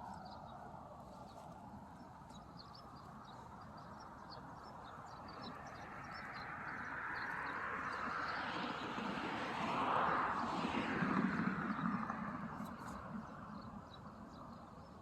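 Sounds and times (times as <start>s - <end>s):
small birds chirping: 0.0s - 8.5s.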